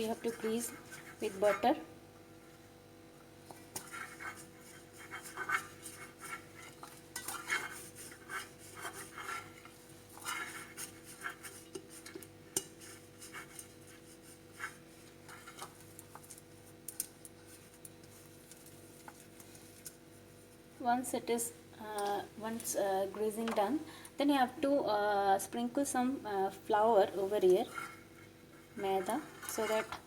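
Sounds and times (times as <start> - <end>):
rubbing and scraping on baking tray: 0.0 - 1.9, 3.5 - 16.8, 26.9 - 30.0
faint steady hum: 0.0 - 30.0.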